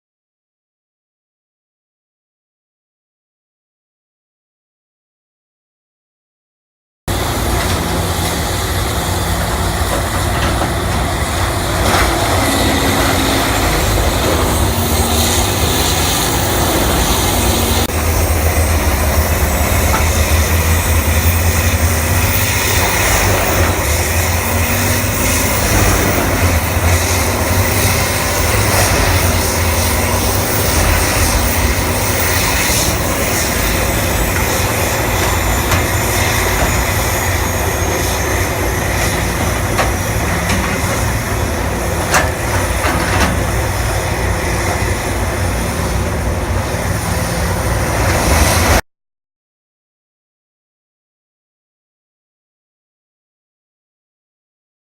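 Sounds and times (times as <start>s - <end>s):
excavator engine drone: 7.1s - 48.8s.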